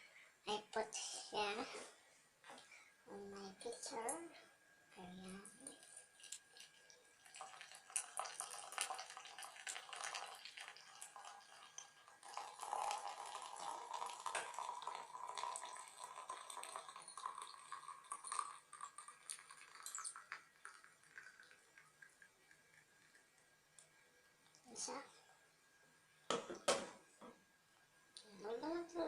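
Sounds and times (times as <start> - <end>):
tea pouring into a teapot: 5.0 - 24.1.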